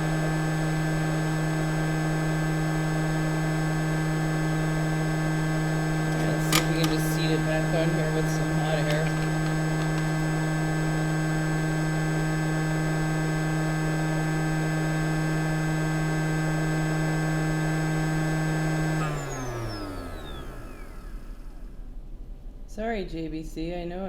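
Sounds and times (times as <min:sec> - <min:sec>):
hot air blower humming: 0:04.6 - 0:12.0.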